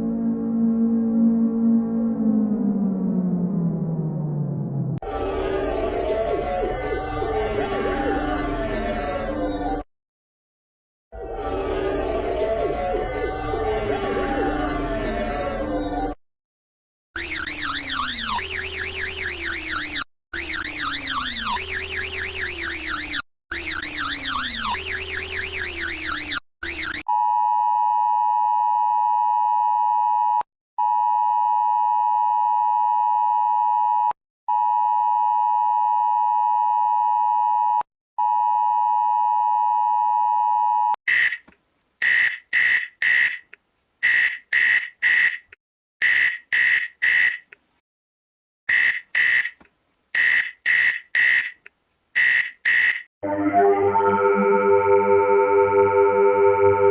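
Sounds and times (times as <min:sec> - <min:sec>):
falling low tone: 0:00.0 - 0:09.0
warbling siren tone: 0:00.0 - 0:09.8, 0:11.2 - 0:16.2, 0:17.2 - 0:27.1, 0:53.2 - 0:56.9.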